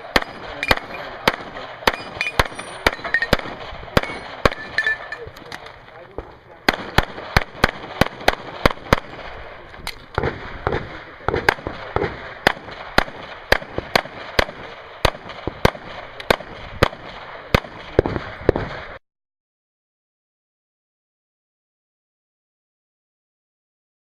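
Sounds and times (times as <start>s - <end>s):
pistol shots: 0.0s - 19.0s.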